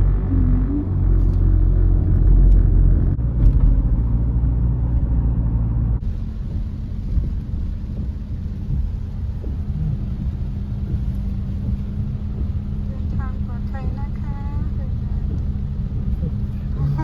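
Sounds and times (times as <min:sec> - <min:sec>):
car driving rumble: 0:00.0 - 0:17.0.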